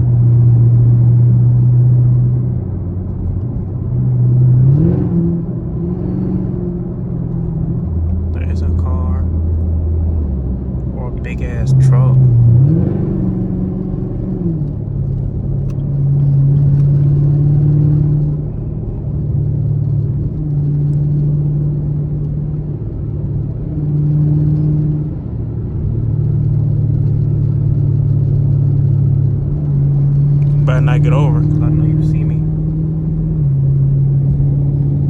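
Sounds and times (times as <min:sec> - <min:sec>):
car exhaust droning: 0:05.4 - 0:20.1, 0:27.8 - 0:35.0.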